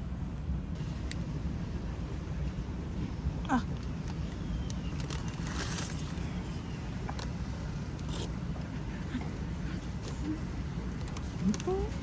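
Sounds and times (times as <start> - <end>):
low background rumble: 0.0 - 12.0
rustling and scraping: 4.9 - 6.2.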